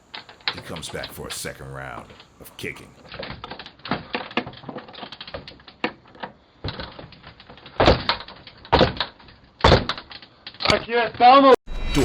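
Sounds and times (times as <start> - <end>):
knocks and rattles on door: 7.7 - 10.0.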